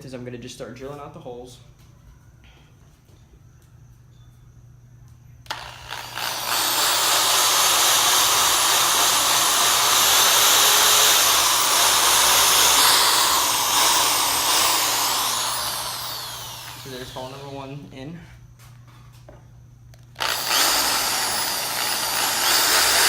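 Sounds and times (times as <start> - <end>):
power drill boring: 5.5 - 17.8, 20.0 - 23.0.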